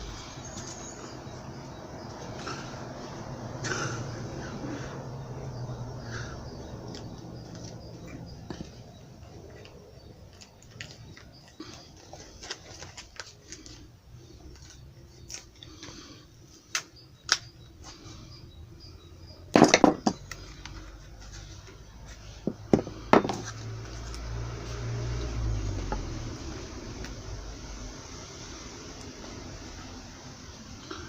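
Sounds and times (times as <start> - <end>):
loud knocks: 19.6 - 20.2, 22.5 - 23.4.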